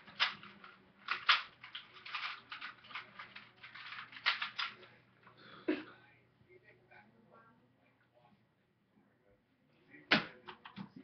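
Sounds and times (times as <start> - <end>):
plastic puzzle cube clicking: 0.1 - 4.8.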